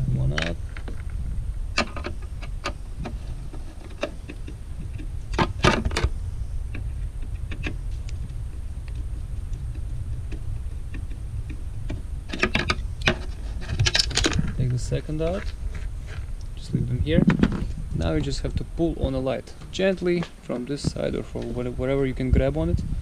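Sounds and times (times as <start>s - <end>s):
low rumble: 0.0s - 23.0s
metal clatter: 9.7s - 16.2s.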